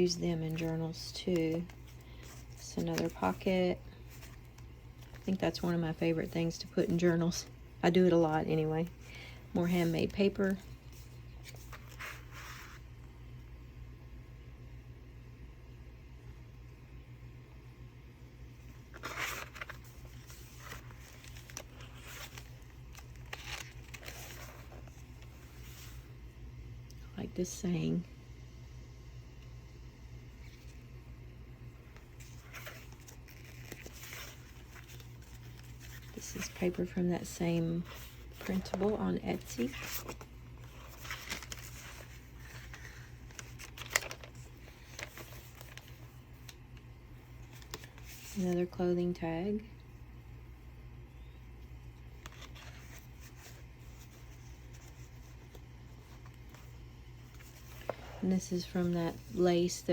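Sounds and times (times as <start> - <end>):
paper pages rustling: 0.0 - 12.9, 18.9 - 26.1, 31.9 - 46.6, 47.4 - 48.5, 51.6 - 59.9
steady low hum: 0.0 - 59.9.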